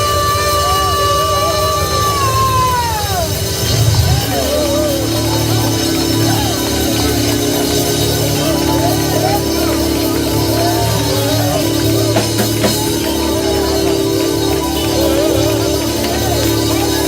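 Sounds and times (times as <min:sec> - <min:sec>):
church praise music: 0:00.0 - 0:17.0
drum hits: 0:03.4 - 0:17.0.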